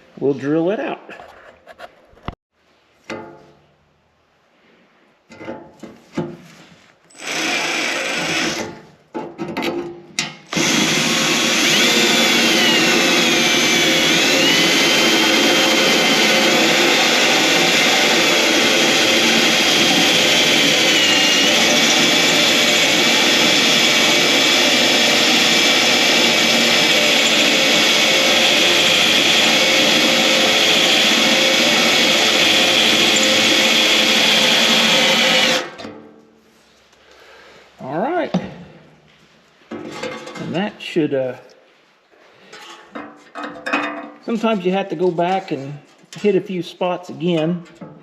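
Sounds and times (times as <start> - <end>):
drill cutting into sheet steel: 7.1 - 8.8, 10.5 - 35.8.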